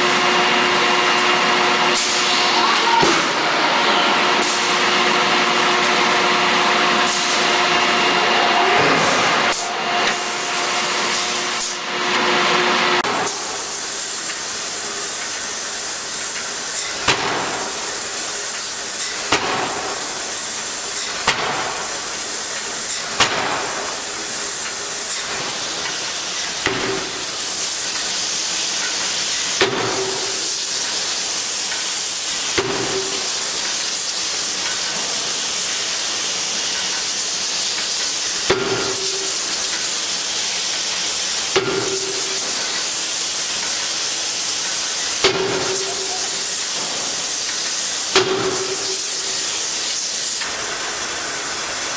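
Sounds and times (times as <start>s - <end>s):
steady hiss: 13.1s - 51.9s.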